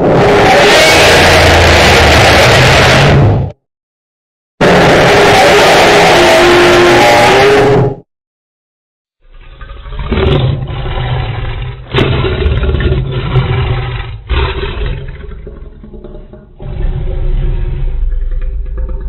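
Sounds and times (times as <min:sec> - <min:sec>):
monster roar: 0:00.0 - 0:03.5, 0:04.6 - 0:08.0, 0:10.0 - 0:15.3, 0:16.6 - 0:19.0.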